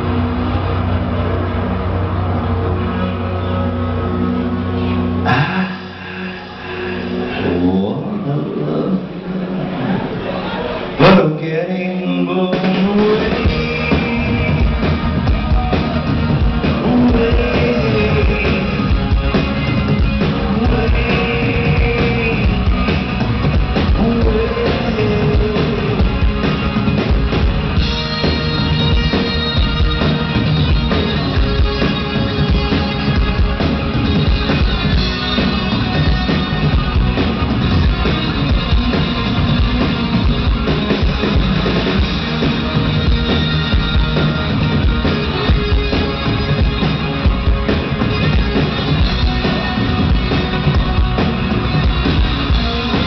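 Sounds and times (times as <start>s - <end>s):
rock band instrumental: 0.0s - 8.3s, 12.3s - 53.0s
electric guitar lead: 0.0s - 11.0s, 12.0s - 53.0s
high sustained layer: 5.2s - 8.4s
drum kit: 12.5s - 53.0s.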